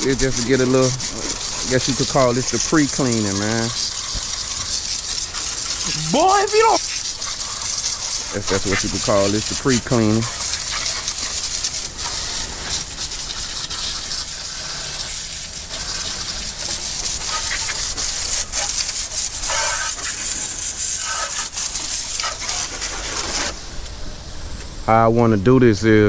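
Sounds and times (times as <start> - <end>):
liquid spray hissing: 0.0 - 24.3.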